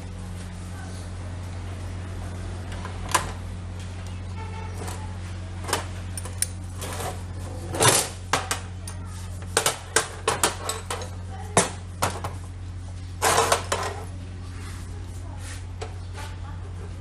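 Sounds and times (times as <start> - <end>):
steady low hum: 0.0 - 17.0
metal tools clinking on compressor: 5.6 - 9.6, 10.2 - 11.2, 13.2 - 14.1.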